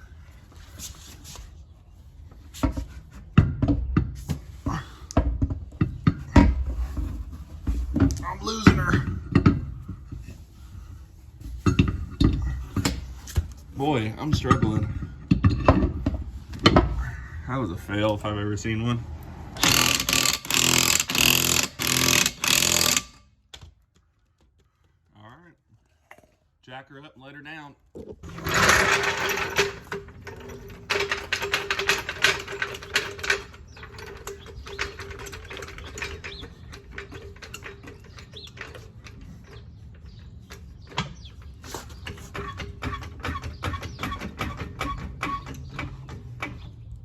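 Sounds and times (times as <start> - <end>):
tools clanking on car suspension: 2.6 - 17.2, 19.6 - 23.3, 28.2 - 47.0
power tool bursts: 19.6 - 23.2.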